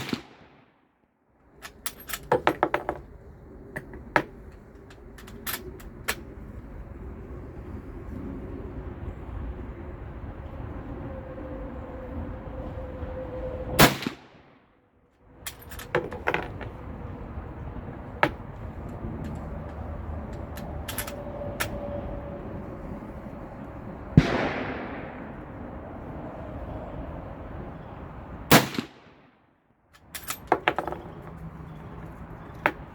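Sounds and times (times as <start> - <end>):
rifle shots: 0.0 - 0.6, 24.2 - 25.4, 28.5 - 29.1.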